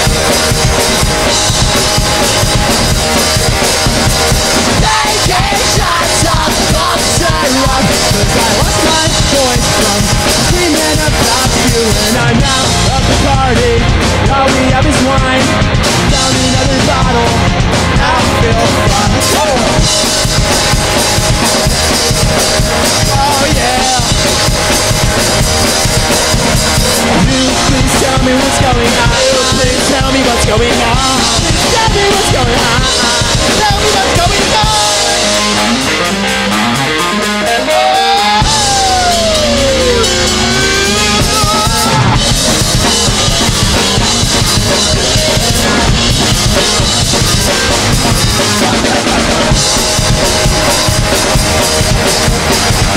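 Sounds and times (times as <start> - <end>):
drum kit: 0.0 - 52.9
punk rock band playing: 0.0 - 52.9
gliding bending guitar notes: 34.2 - 52.9.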